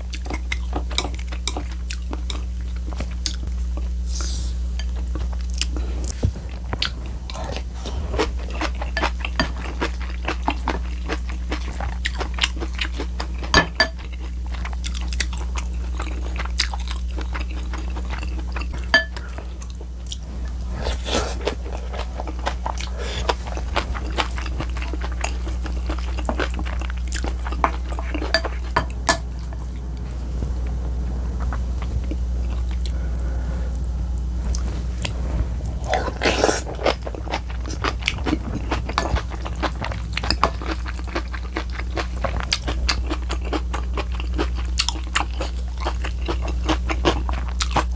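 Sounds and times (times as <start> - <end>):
crunchy chewing: 0.0 - 47.9
low hum: 2.2 - 12.5, 15.6 - 46.6
utensils clinking on dishes: 13.4 - 14.1, 17.9 - 19.5, 26.3 - 29.4.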